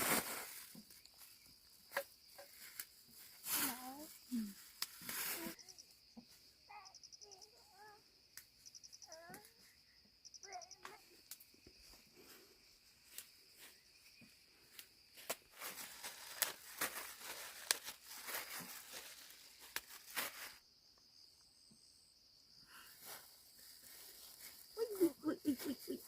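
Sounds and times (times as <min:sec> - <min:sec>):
insects shrilling: 0:00.2 - 0:06.0
rustling and crackling: 0:15.2 - 0:20.6.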